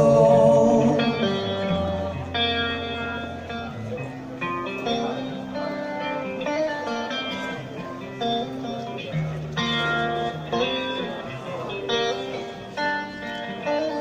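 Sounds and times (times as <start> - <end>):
held bass line: 0.0 - 3.7
guitar picking single notes: 0.0 - 14.0.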